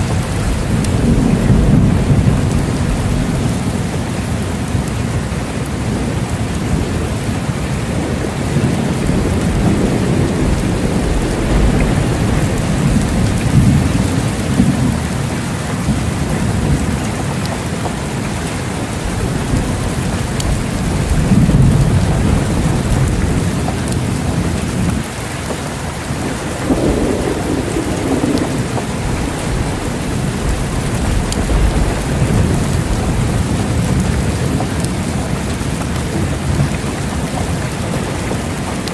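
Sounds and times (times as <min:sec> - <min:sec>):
heavy rain: 0:00.0 - 0:38.9
thunder rumbling: 0:00.0 - 0:38.9.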